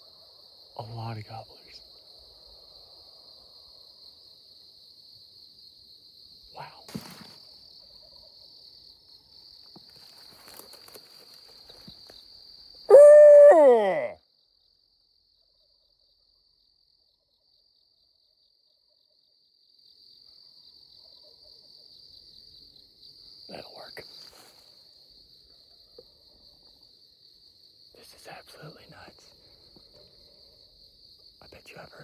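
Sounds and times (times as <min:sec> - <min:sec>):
chorus of insects: 0:00.0 - 0:32.0
howl sliding down: 0:12.9 - 0:14.2.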